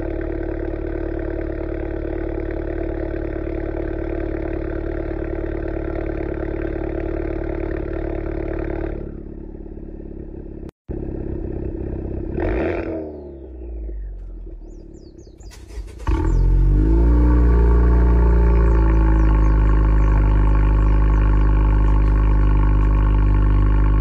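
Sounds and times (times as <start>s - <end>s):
car engine idling: 0.0s - 12.4s, 13.4s - 24.0s
engine starting with rev flare: 14.2s - 20.1s.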